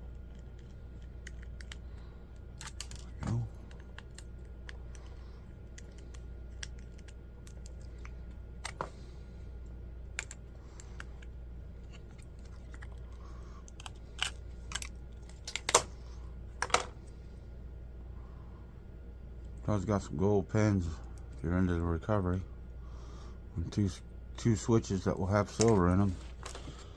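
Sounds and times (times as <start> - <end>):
low hum: 0.0 - 26.9
laptop parts clicking and tapping: 10.2 - 11.3.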